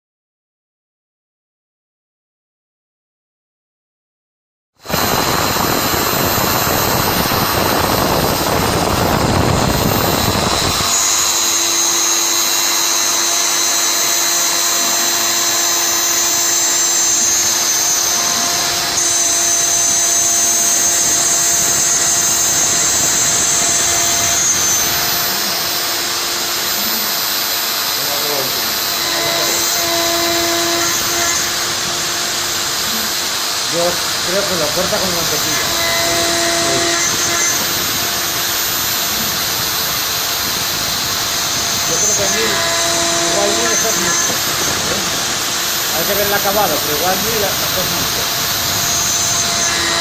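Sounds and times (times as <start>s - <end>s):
milling machine cutting: 4.8s - 50.0s.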